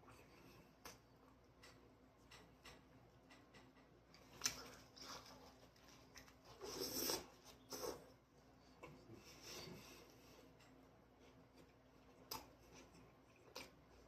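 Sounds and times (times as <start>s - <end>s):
chewing: 10.5s - 14.0s.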